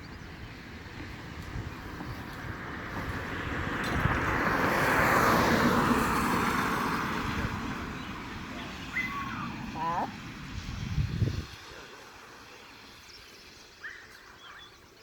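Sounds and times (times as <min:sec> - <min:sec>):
vehicle passing by: 0:00.3 - 0:12.0.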